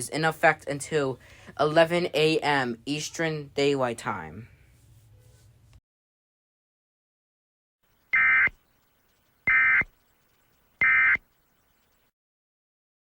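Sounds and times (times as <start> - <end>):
buzzing digital data tones: 7.8 - 12.1.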